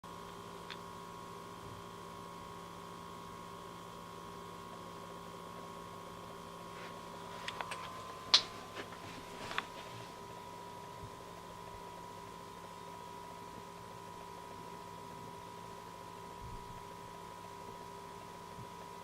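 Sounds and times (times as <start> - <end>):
cooling fan humming and whining: 0.1 - 19.0
clicks: 7.4 - 9.8.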